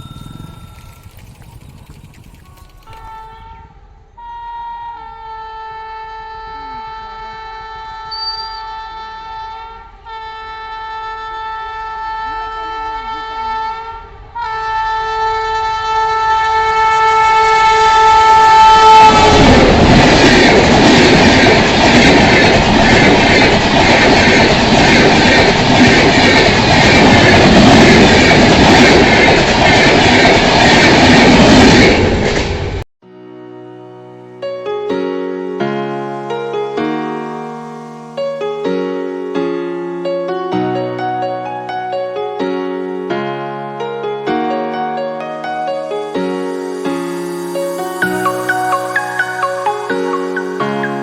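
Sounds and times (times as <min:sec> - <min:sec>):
locomotive horn blasts: 0:02.9 - 0:19.8
train rushing and clattering past: 0:18.3 - 0:32.8.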